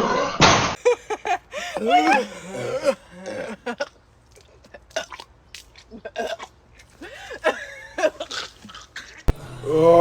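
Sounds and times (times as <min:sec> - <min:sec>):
stifled burps: 0:05.9 - 0:06.6, 0:08.0 - 0:09.9.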